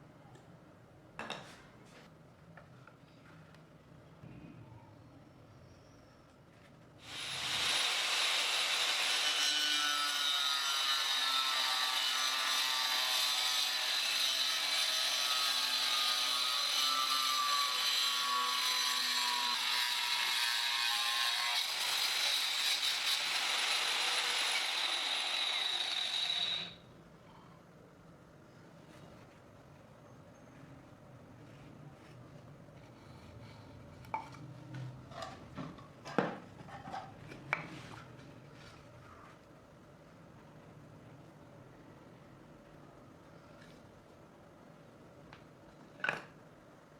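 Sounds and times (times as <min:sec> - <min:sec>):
angle grinder whining: 0:07.1 - 0:26.8.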